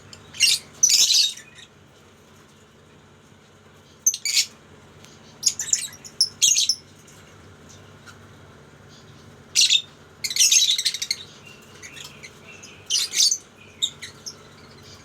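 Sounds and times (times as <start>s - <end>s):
lovebirds chirping: 0.0s - 1.7s, 3.9s - 6.8s, 8.8s - 15.0s.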